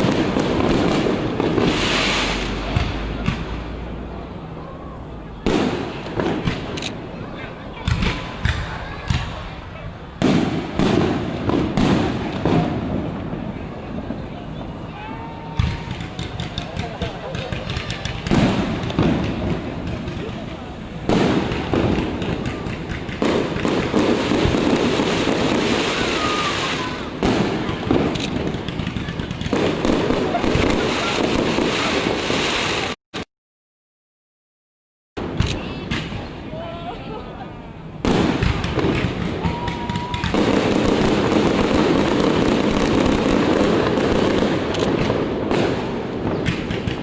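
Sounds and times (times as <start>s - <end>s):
fireworks booming: 0.0s - 33.0s, 35.2s - 36.4s, 37.9s - 47.0s
fireworks crackling rumble: 0.0s - 33.0s, 35.2s - 47.0s
firework whistle: 1.1s - 3.2s, 23.6s - 28.1s.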